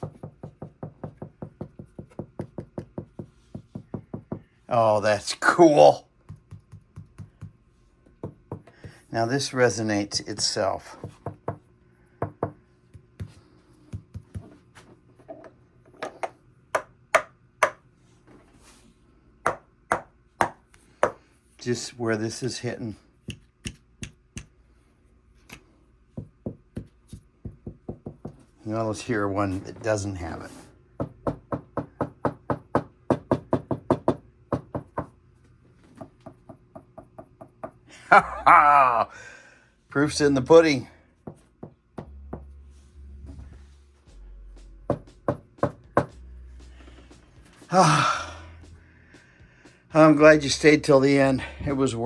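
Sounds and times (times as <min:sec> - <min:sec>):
knocking on a workbench: 0:44.9 - 0:46.1.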